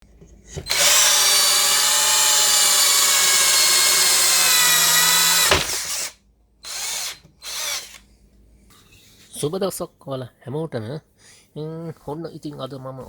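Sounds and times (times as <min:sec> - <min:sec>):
cordless drill motor whine: 0:00.5 - 0:08.0.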